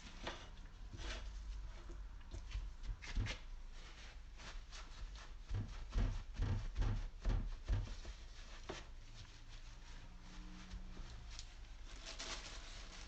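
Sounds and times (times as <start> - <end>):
hands patting meat: 4.5 - 9.4.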